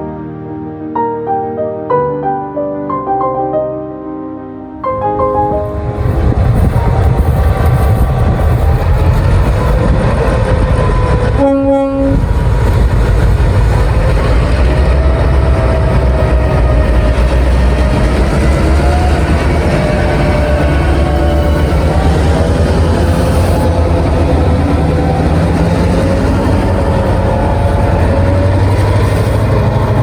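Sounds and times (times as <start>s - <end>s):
diesel train engine rumbling: 5.4s - 30.0s
train horn note: 10.8s - 12.4s, 14.2s - 30.0s.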